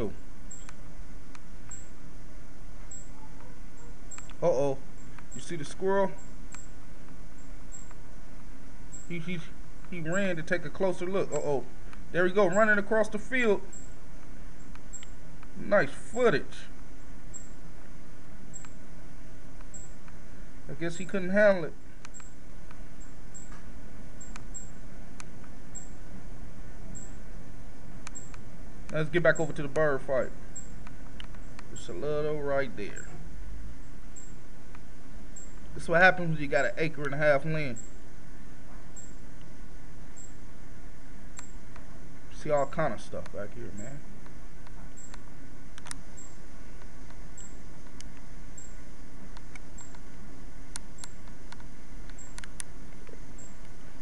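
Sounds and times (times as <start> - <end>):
low outdoor rumble: 0.0 - 54.0
small birds chirping: 0.0 - 54.0
steady low hum: 0.0 - 54.0
sharp click: 0.5 - 1.9, 4.1 - 4.4, 14.2 - 15.6, 18.6 - 18.8, 22.0 - 22.8, 23.4 - 25.9, 28.0 - 29.9, 30.6 - 31.7, 41.3 - 41.9, 44.2 - 48.7, 49.3 - 50.1, 50.7 - 53.8.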